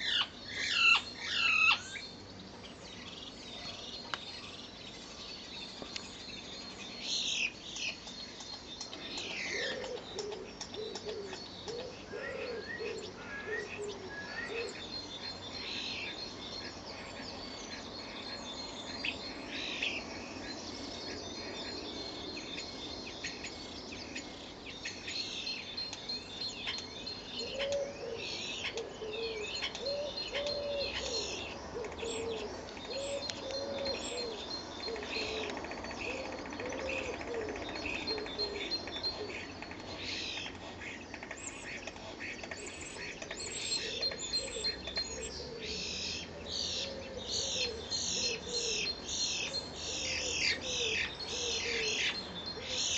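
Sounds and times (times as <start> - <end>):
starlings chirping and whistling: 0.0 - 52.9
low repeated cooing: 9.2 - 14.9, 27.4 - 40.0, 43.3 - 52.9.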